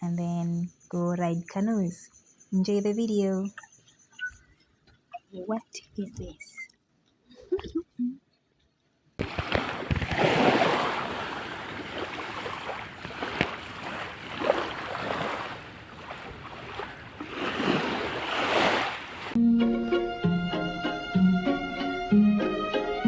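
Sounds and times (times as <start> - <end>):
sea surf washing: 9.2 - 19.4
water splashes: 9.2 - 19.4.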